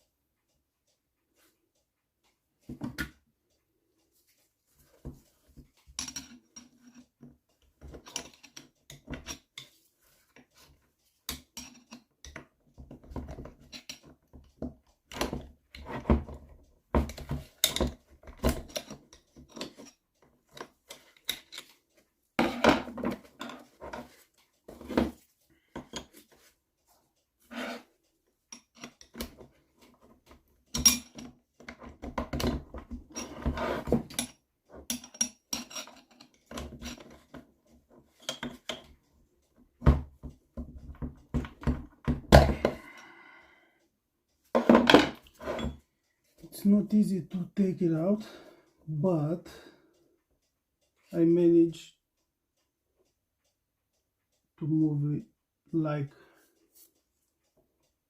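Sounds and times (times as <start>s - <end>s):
hand tools clinking on metal: 11.3s - 12.4s, 33.1s - 37.1s.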